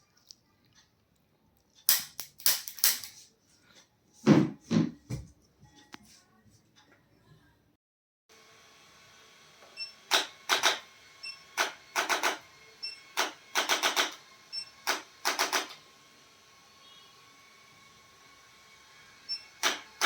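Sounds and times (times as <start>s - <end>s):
sharp mechanical clicks: 10.1s - 10.8s, 11.6s - 12.4s, 13.2s - 14.2s, 14.8s - 15.8s, 19.6s - 20.0s.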